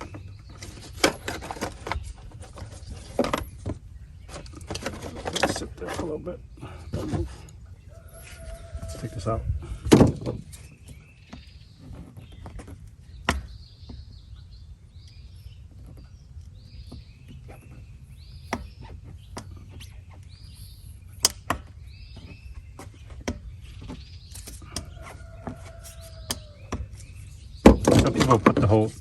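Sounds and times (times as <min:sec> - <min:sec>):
low outdoor background noise: 0:00.0 - 0:29.0
small bird chirping: 0:10.4 - 0:29.0.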